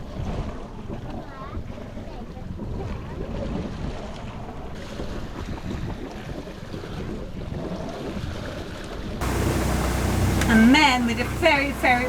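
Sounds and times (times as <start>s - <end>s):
water rushing past hull: 3.3s - 12.0s
low hum: 9.2s - 12.0s
steady hiss: 9.2s - 12.0s
wind buffeting microphone: 9.2s - 12.0s.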